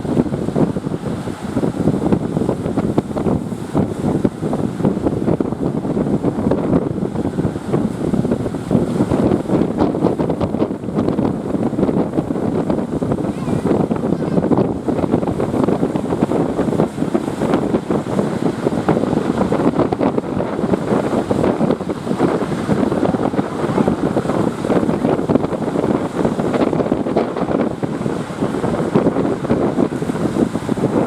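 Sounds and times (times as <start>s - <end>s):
sea waves: 0.0s - 31.0s
wind buffeting microphone: 0.0s - 31.0s.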